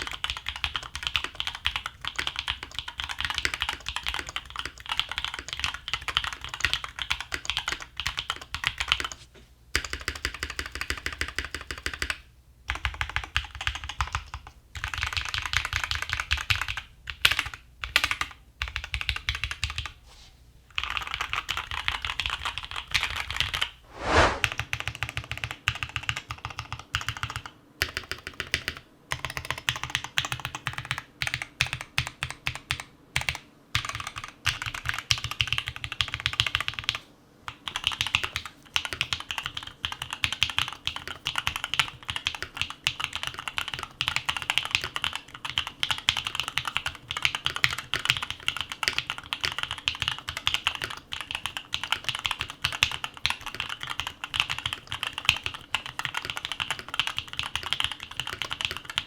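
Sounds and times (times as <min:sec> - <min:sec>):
mechanical keyboard typing: 0:00.0 - 0:09.1, 0:12.7 - 0:19.8, 0:29.1 - 0:37.0, 0:37.6 - 0:59.0.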